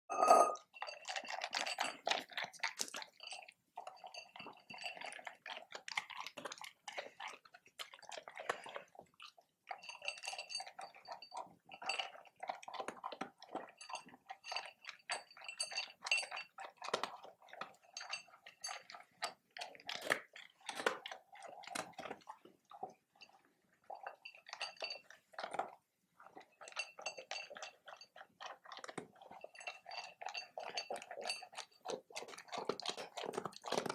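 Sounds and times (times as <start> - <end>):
dog chewing food: 26.6 - 33.9.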